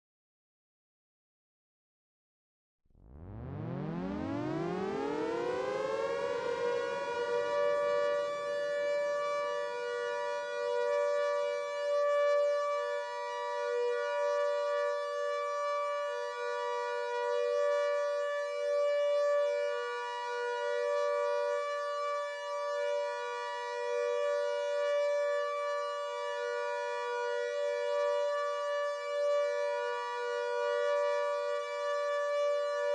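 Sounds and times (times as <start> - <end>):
air-raid siren wailing: 3.1 - 32.9.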